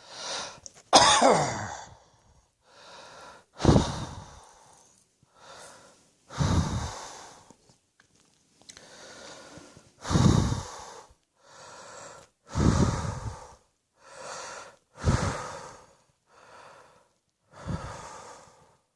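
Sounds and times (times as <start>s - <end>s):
drawn breath: 0.0s - 0.6s, 2.1s - 7.6s, 8.7s - 18.9s
person coughing: 0.9s - 2.0s.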